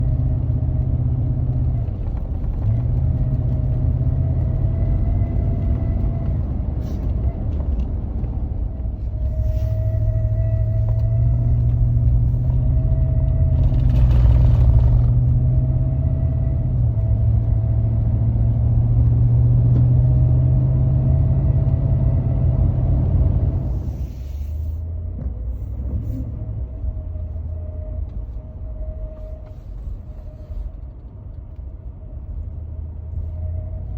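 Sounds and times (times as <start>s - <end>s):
truck engine rumbling: 0.0s - 33.9s
thin whistling squeal: 9.1s - 11.6s.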